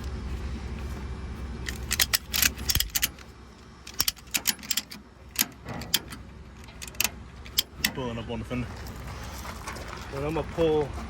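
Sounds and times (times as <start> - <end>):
low steady rumble: 0.0 - 11.0
metal strap hardware clinking: 1.6 - 8.0.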